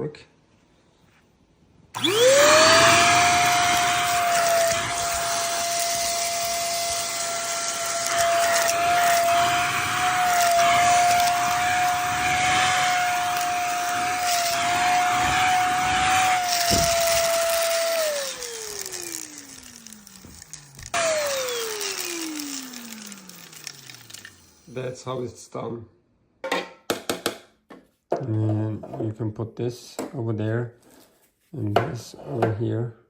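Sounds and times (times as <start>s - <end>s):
stick vacuum whining: 1.9s - 24.9s.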